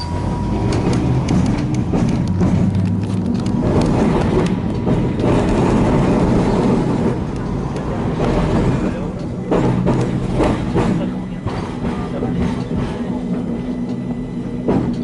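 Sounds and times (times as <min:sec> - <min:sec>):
tram wheels and motors rumbling: 0:00.0 - 0:15.0.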